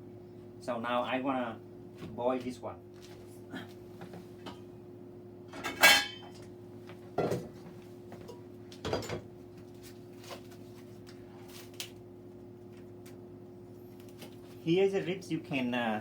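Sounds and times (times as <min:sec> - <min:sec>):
steady hum: 0:00.0 - 0:16.0
metallic cookware clank: 0:05.6 - 0:06.4
dull knocks of cookware: 0:07.2 - 0:07.6, 0:08.2 - 0:09.3.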